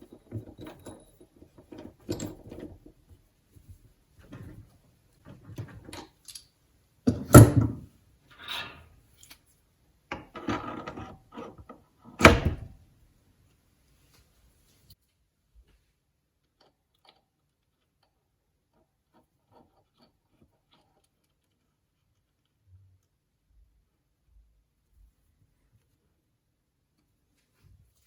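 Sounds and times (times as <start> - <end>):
metal tools clunking and knocking: 0.0 - 3.2.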